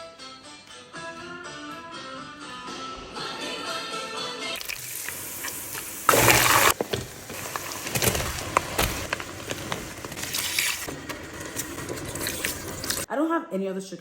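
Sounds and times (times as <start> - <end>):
liquid pouring: 4.6 - 8.4.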